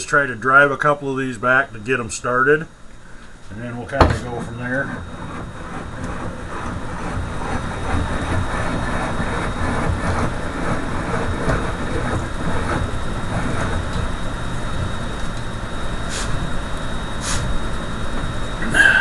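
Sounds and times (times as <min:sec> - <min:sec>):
low rumbling: 0:03.5 - 0:19.0.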